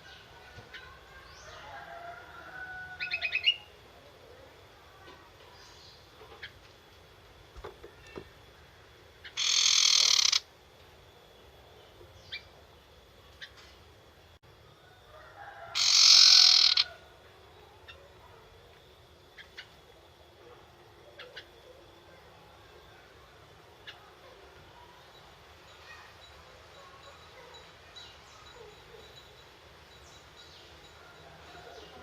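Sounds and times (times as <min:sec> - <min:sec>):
bird rattling call: 0:09.2 - 0:10.4, 0:15.8 - 0:17.0.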